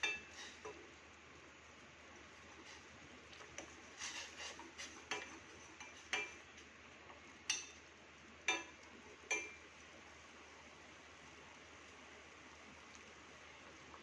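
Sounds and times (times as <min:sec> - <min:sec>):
metal spoon clinking on pot: 0:08.5 - 0:09.6.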